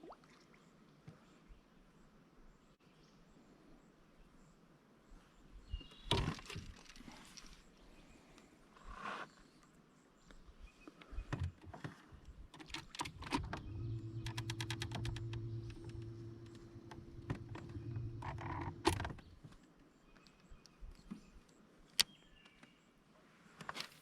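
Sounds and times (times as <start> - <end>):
small mechanical clicks and rattles: 12.6 - 19.2
low motor hum: 13.0 - 19.4.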